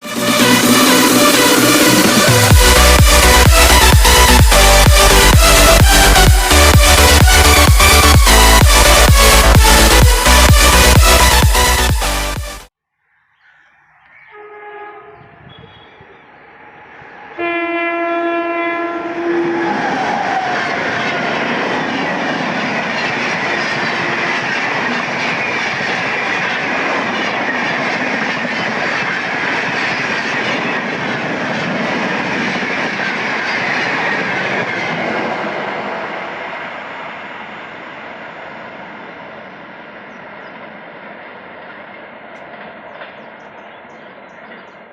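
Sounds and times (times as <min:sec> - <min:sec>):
train passing at high speed: 0:00.0 - 0:12.2, 0:14.1 - 0:44.9
train horn blasts: 0:14.3 - 0:16.2, 0:17.3 - 0:20.4
wheels clickety-clack on rails: 0:19.8 - 0:36.2, 0:39.5 - 0:44.9.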